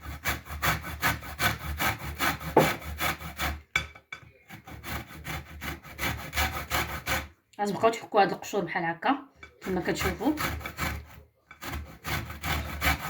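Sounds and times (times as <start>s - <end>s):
lemon peel scraping on grater: 9.6s - 13.0s.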